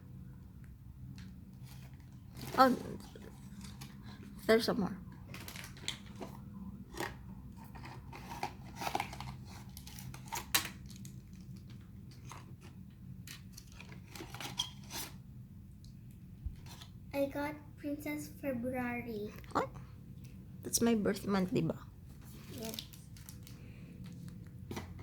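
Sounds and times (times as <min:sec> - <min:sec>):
packaging crinkling and tearing: 0:05.3 - 0:15.2, 0:22.4 - 0:25.0.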